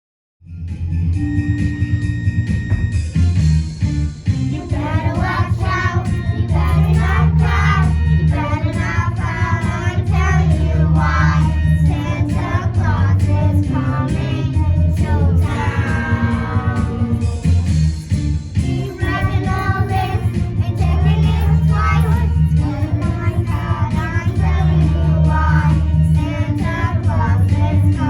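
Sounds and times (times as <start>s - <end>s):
instrumental accompaniment with bass: 0.4s - 28.0s
children singing: 4.6s - 17.6s, 18.7s - 28.0s.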